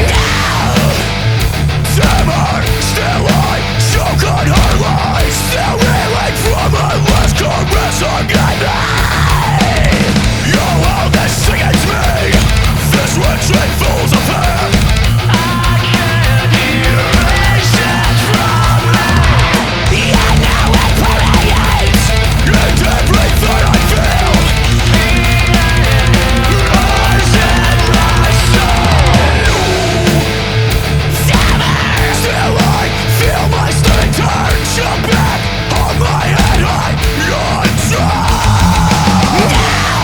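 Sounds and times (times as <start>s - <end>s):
heavy metal music: 0.0s - 40.0s.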